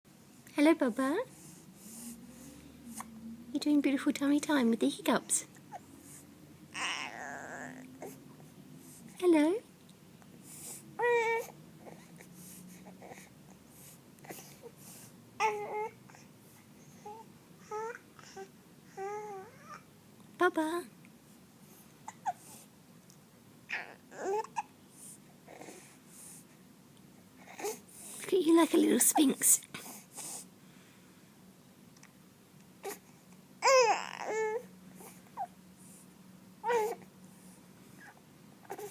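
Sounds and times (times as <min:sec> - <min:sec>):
baby fussing: 0:06.7 - 0:08.2
baby babbling: 0:06.8 - 0:08.2, 0:17.0 - 0:19.8, 0:23.7 - 0:24.7, 0:33.6 - 0:34.7, 0:36.6 - 0:37.0.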